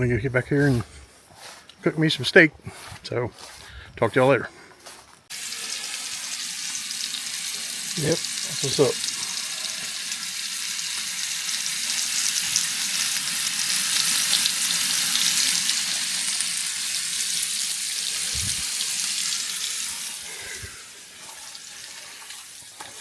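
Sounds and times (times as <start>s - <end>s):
steak sizzling: 5.3s - 23.0s.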